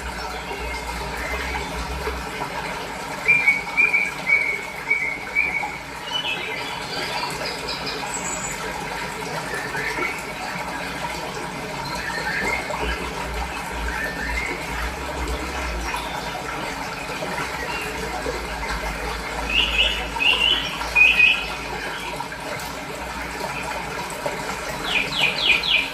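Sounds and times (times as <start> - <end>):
water flowing: 0.0 - 25.9
small birds chirping: 24.8 - 25.9.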